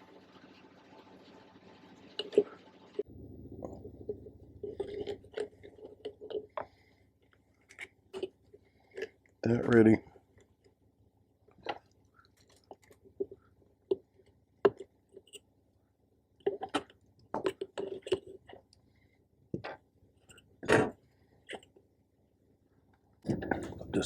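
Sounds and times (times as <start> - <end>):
hardware being handled: 23.3 - 24.0.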